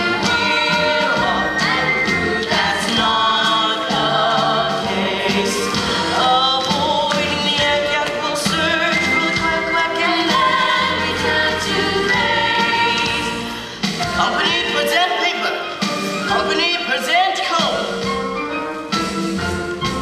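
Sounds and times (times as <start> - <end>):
group singing show tune: 0.0 - 15.5.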